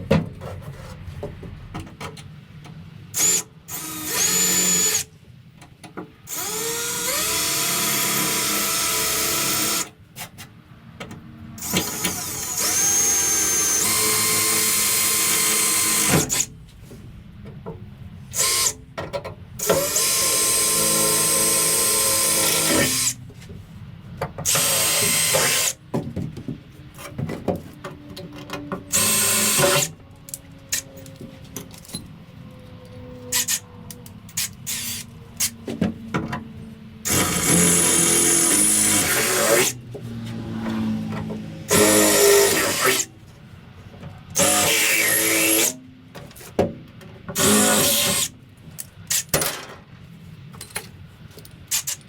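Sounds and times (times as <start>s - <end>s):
power drill running: 3.2s - 5.1s, 6.3s - 9.9s, 11.6s - 16.5s, 18.3s - 18.8s, 19.6s - 23.2s, 24.5s - 25.8s, 28.9s - 29.9s, 37.0s - 39.8s, 41.7s - 43.1s, 44.4s - 45.7s, 47.4s - 48.3s.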